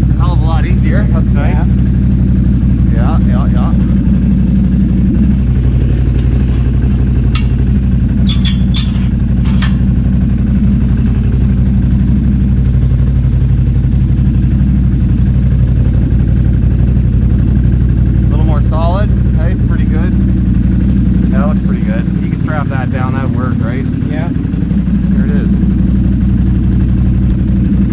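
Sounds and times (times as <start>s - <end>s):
engine idling: 0.0s - 27.9s
metallic clicks and knocks: 7.3s - 7.6s.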